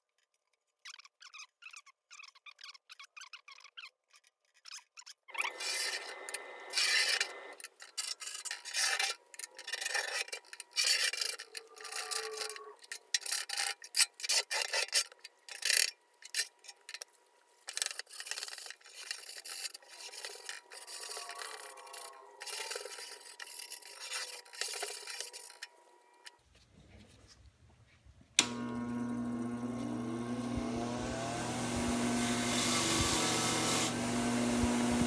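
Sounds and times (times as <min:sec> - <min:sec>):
scraping on sheet steel: 0:05.4 - 0:26.3.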